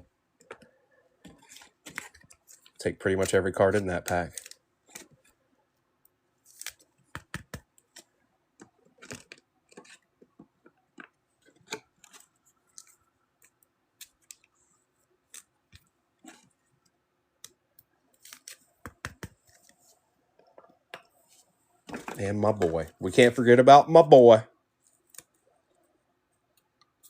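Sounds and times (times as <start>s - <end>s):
cards and wrappers crinkling: 1.2s - 5.2s, 6.4s - 8.0s.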